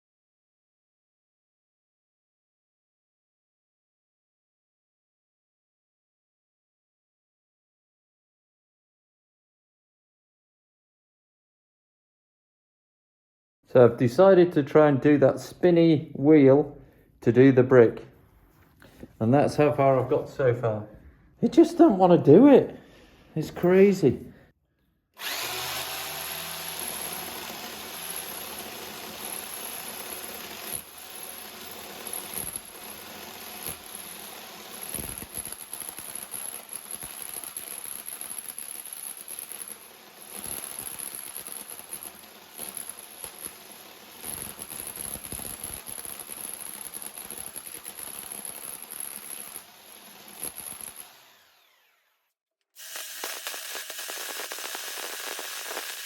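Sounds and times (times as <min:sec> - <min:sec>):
drill grinding into brick: 0:25.2 - 0:56.0.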